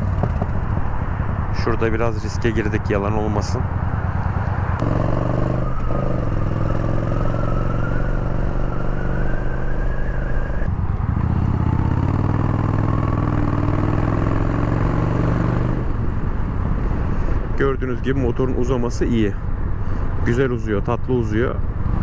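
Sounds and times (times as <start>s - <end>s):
motorcycle engine accelerating: 0.0s - 1.7s, 2.6s - 16.8s.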